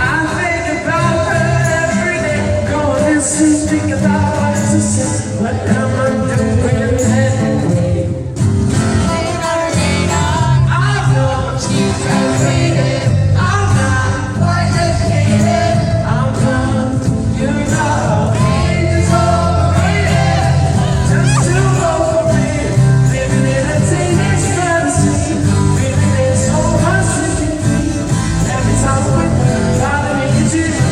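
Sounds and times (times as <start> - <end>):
pop-rock band playing live: 0.0 - 30.9
person singing: 17.8 - 30.9.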